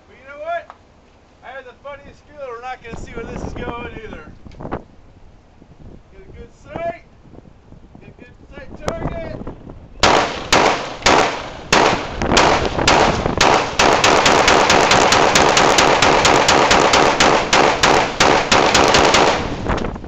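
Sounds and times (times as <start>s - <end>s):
rifle shots: 10.0s - 19.8s.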